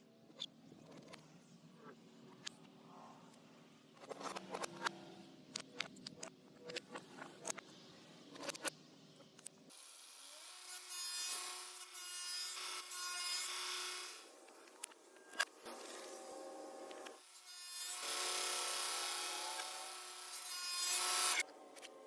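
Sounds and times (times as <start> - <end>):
power tool cutting wood: 9.7 - 14.4, 17.1 - 21.5.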